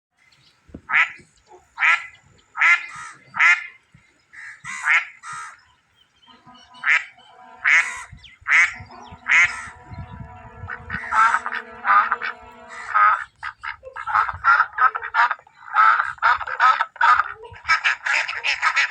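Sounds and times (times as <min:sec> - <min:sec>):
ducks quacking: 0:00.8 - 0:18.9
steady low drone: 0:06.3 - 0:13.5.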